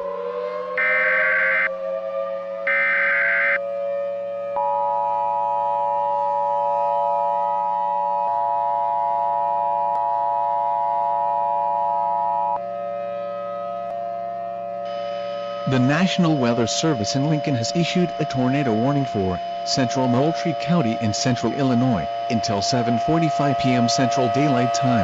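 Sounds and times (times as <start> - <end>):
steady electronic drone: 0.8 - 1.7, 2.7 - 3.6, 6.5 - 25.0
two-tone attention signal: 0.8 - 1.7, 2.7 - 3.6, 14.9 - 25.0.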